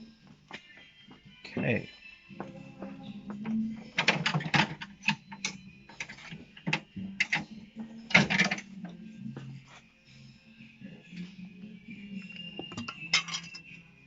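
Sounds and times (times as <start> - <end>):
metallic clinks of hand tools: 12.8 - 13.7.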